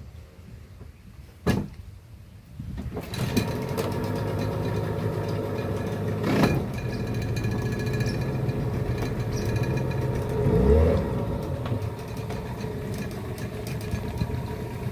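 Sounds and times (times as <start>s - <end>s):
outboard motor running: 3.1s - 14.9s.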